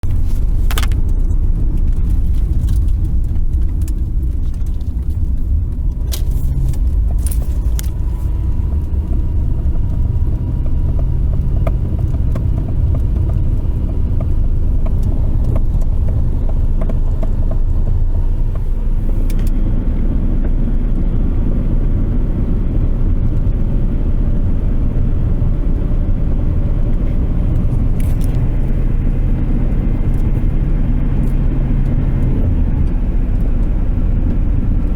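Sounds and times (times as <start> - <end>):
sharp pops from dashboard: 0.0 - 19.7
engine and road rumble: 0.0 - 34.9.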